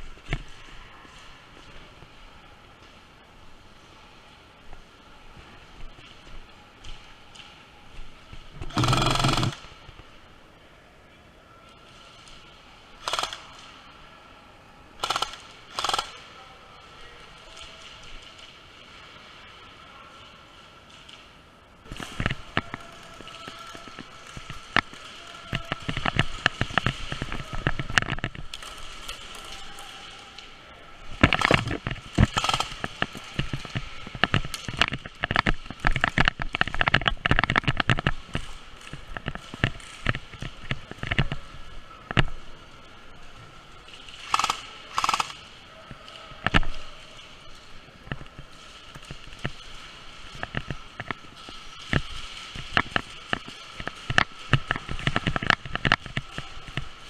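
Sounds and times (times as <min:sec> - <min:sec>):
airsoft guns popping: 0:08.6 - 0:09.7, 0:15.0 - 0:16.1, 0:31.2 - 0:38.1, 0:44.2 - 0:45.4.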